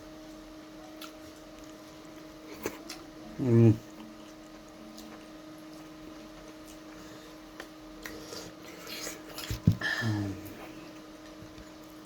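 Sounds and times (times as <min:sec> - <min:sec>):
steady low hum: 0:00.0 - 0:12.0
person chewing: 0:01.0 - 0:11.9.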